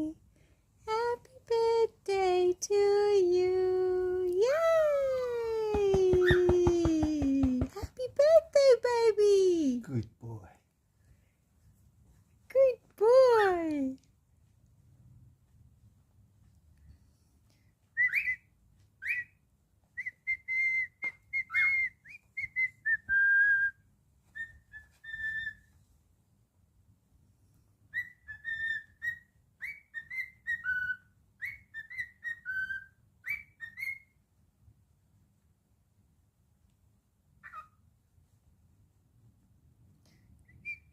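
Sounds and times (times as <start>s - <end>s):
cockatiel whistling: 18.0s - 19.4s, 20.0s - 23.7s, 24.3s - 25.7s, 27.9s - 34.1s, 40.4s - 40.9s.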